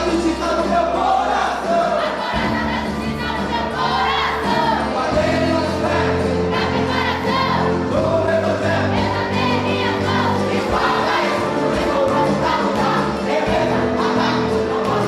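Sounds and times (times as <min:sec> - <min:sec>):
band playing: 0:00.0 - 0:15.0
crowd singing worship song: 0:00.0 - 0:15.0.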